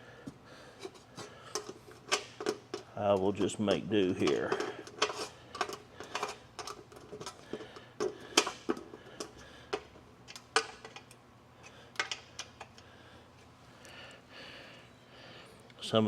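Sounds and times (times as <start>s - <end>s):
metallic clicks of bolts and nuts: 8.0s - 12.9s.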